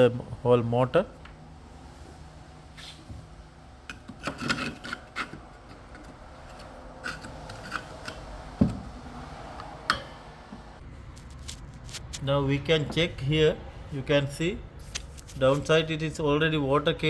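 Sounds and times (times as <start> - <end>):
parts rubbing and scraping: 3.9 - 13.0.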